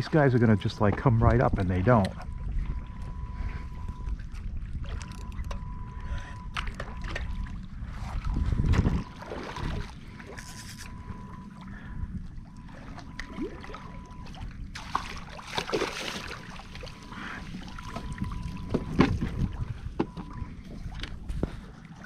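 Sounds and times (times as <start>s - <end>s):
water splashing: 0.0s - 22.0s
wind on the microphone: 1.0s - 12.4s, 17.5s - 21.8s.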